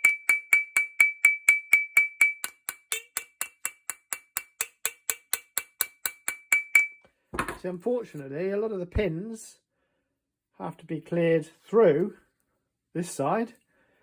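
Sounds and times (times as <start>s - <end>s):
small hammer tapping on metal: 0.0s - 7.6s.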